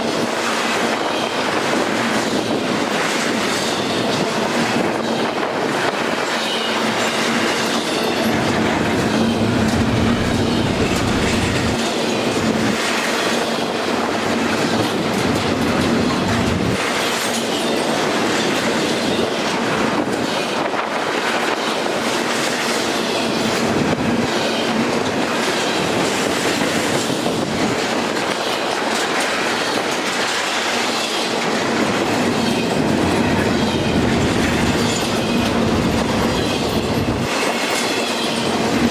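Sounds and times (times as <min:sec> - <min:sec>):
train wheels clicking over rail joints: 0:05.7 - 0:20.5, 0:25.0 - 0:38.9
rumble of rolling cars: 0:08.1 - 0:12.7, 0:14.6 - 0:16.8, 0:32.0 - 0:37.3.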